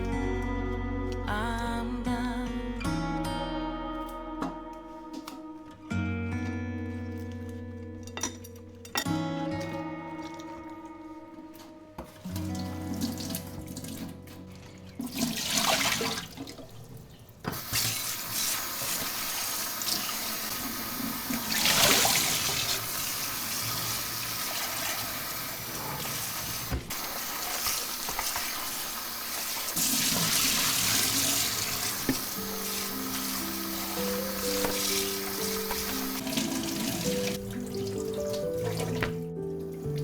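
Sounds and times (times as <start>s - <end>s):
water running from tap: 12.4s - 14.2s, 14.9s - 40.0s.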